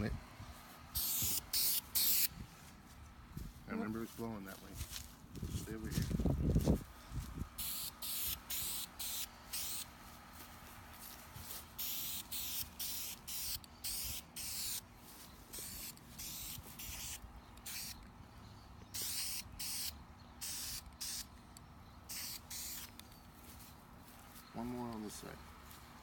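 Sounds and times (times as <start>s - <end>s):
spray paint can hissing: 1.0s - 2.3s, 7.6s - 9.9s, 11.8s - 14.8s, 15.5s - 18.0s, 18.9s - 21.3s, 22.1s - 22.9s.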